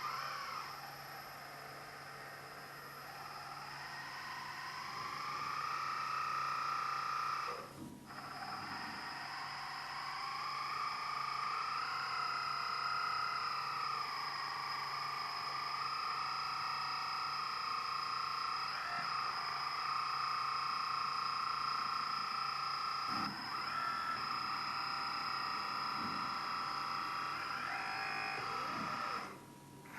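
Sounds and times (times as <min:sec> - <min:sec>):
hydraulic pump electric whine: 0:00.0 - 0:29.9.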